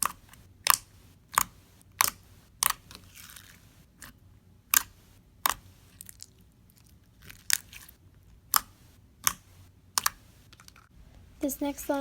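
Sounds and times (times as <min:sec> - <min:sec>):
slime popping and clicking: 0:00.0 - 0:03.0, 0:04.7 - 0:05.6, 0:08.5 - 0:10.2.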